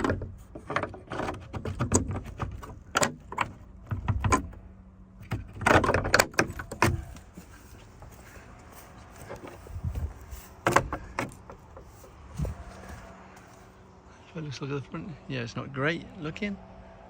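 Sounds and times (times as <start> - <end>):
door latch clicks and rattles: 5.2 - 7.0.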